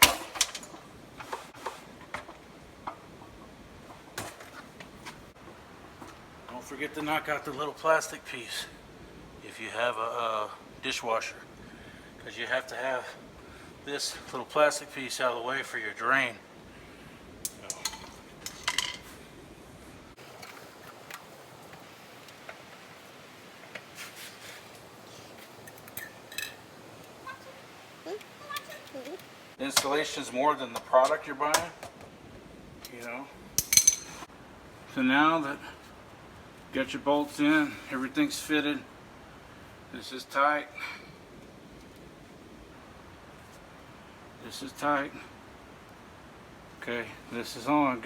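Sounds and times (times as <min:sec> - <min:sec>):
tools and parts clicking: 0:00.0 - 0:00.8, 0:17.5 - 0:19.1, 0:33.6 - 0:34.3.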